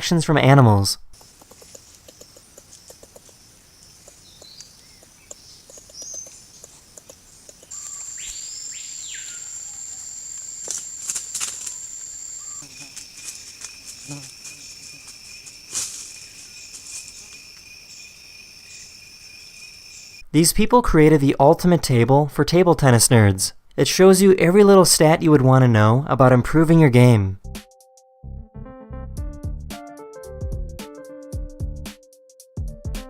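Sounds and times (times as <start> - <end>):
scattered clicks and taps: 1.2 - 3.4, 4.0 - 7.8
insects buzzing chorus: 1.2 - 20.2
rising and falling bird call: 7.7 - 10.6.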